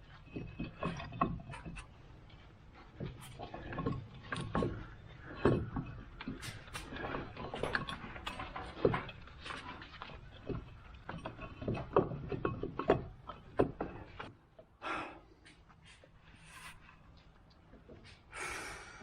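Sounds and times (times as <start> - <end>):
hand tools clicking and knocking: 0.0 - 14.7.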